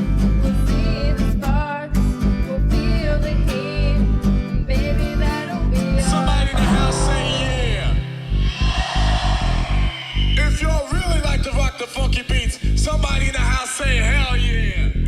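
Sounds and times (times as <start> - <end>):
heavy bass: 4.6 - 15.0
plucked strings: 5.8 - 8.6
sliding melody line: 6.0 - 8.4.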